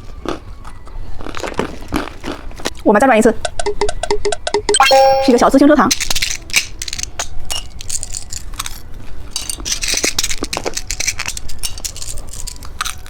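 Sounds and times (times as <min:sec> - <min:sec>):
candy packaging crackling: 0:09.6 - 0:13.0.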